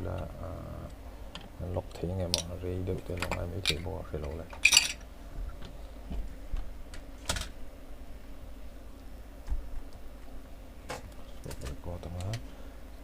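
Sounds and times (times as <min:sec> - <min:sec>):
low steady hum: 0:00.0 - 0:13.0
small parts clicking and tapping: 0:02.3 - 0:05.0.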